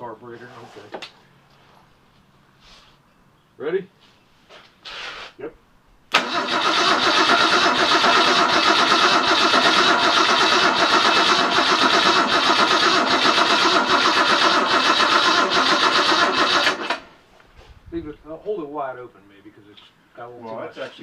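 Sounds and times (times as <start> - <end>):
starter motor cranking engine: 6.1 - 17.1.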